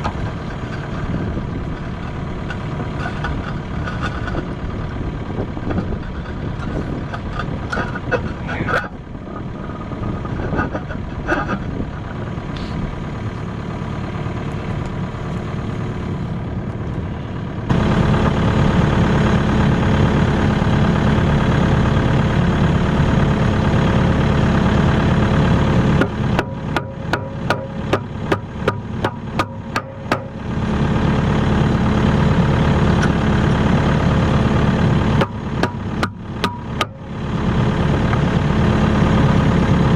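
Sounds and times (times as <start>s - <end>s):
excavator diesel engine running: 0.0s - 39.9s
sharp knocks: 26.0s - 30.5s, 35.2s - 37.0s.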